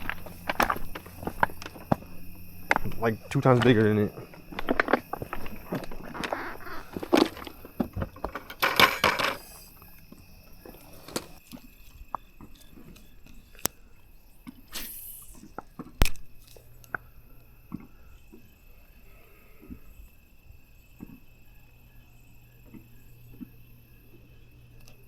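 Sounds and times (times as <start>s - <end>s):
brief rustling: 0.0s - 9.7s.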